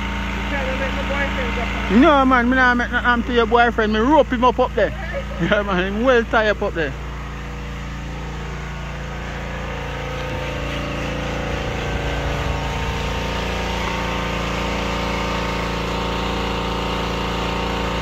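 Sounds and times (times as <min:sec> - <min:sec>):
pressure washer engine running: 0:00.0 - 0:18.0.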